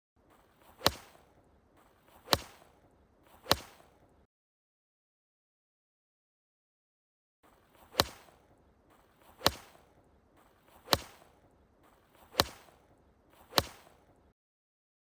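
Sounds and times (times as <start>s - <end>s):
ball struck with sharp crack: 0.6s - 1.3s, 2.1s - 4.1s, 7.8s - 8.4s, 9.2s - 10.0s, 10.7s - 11.4s, 12.1s - 14.1s.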